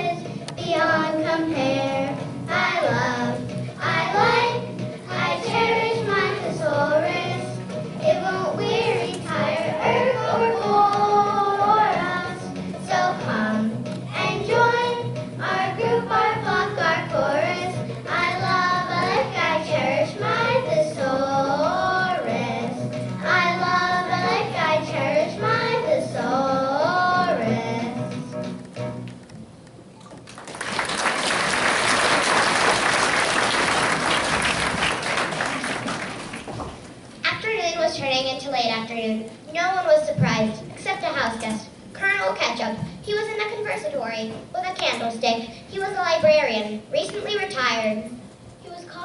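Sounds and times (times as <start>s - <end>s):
musical accompaniment: 0.0s - 29.8s
children singing: 0.7s - 28.0s.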